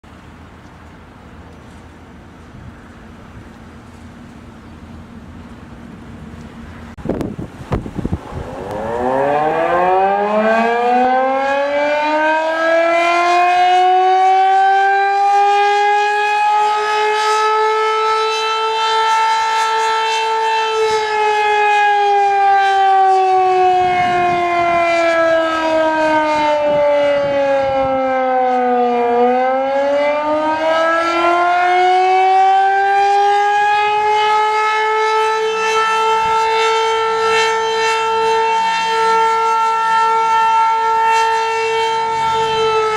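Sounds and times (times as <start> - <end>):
civil defense siren wailing: 0.1 - 42.9.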